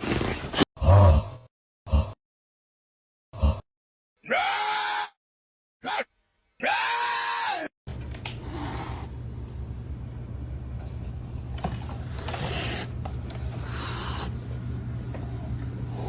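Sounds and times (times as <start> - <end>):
steady low hum: 7.9 - 16.0
cat hissing: 8.4 - 9.1, 12.2 - 12.9, 13.6 - 14.4.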